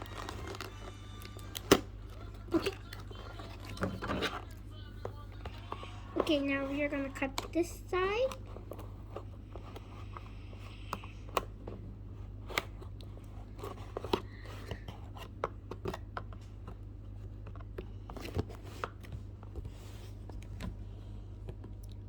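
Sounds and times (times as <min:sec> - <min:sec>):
scissors cutting packaging: 0:00.0 - 0:04.6.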